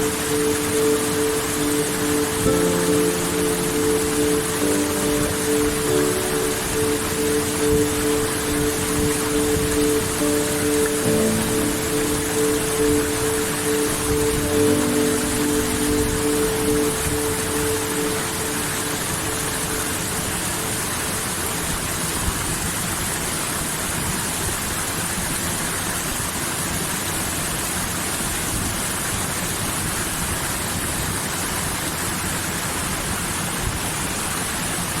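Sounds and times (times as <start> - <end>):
stream water rushing: 0.0 - 34.8.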